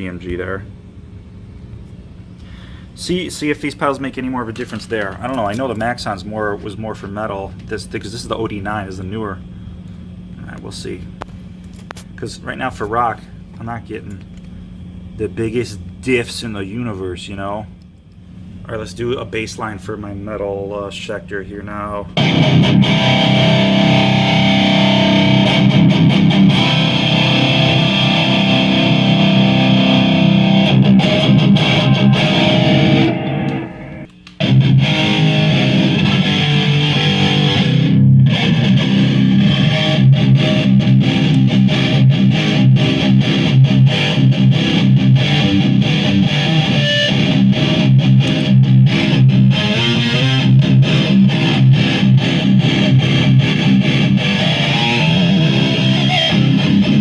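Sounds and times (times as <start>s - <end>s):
distorted electric guitar riff: 22.2s - 57.0s.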